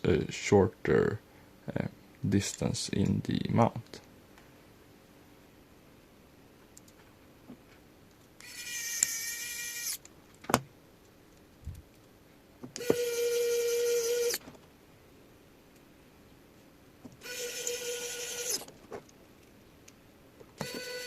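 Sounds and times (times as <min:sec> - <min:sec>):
electric screwdriver whining: 0:08.4 - 0:10.0, 0:12.8 - 0:14.4, 0:17.2 - 0:18.7, 0:20.6 - 0:21.0.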